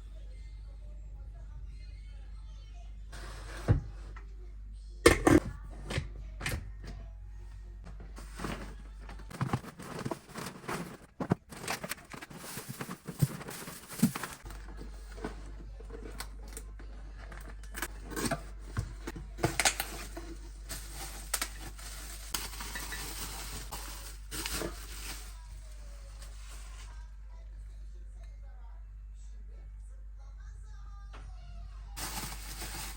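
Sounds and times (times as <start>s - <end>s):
packaging rustling and tearing: 9.3s - 14.7s, 19.4s - 25.5s, 32.0s - 32.9s.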